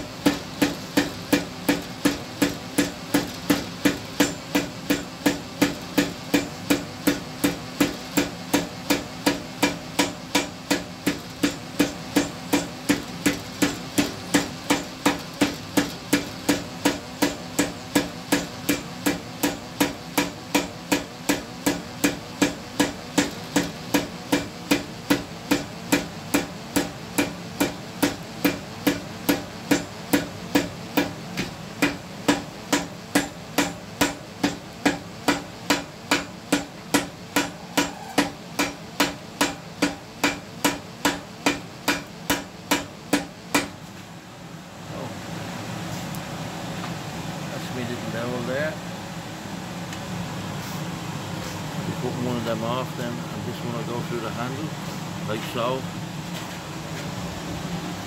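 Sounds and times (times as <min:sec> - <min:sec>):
steady low hum: 0:00.0 - 0:58.0
hammer striking iron on anvil: 0:00.2 - 0:43.8.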